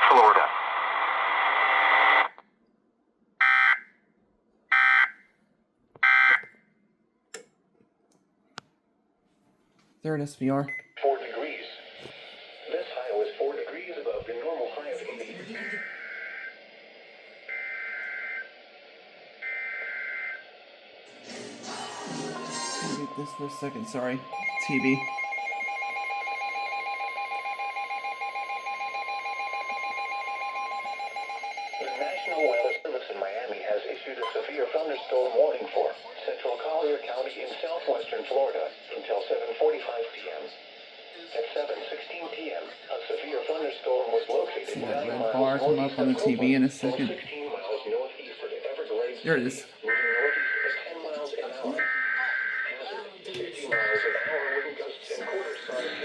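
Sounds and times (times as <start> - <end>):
steady alarm tone: 3.4 - 3.8, 4.7 - 5.2, 6.0 - 6.5, 19.4 - 20.4, 22.7 - 32.8
alert data bursts: 23.0 - 27.6.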